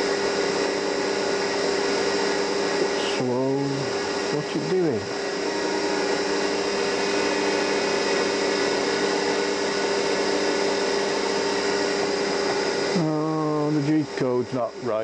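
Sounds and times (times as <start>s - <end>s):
mill spindle motor whining: 0.0s - 15.0s.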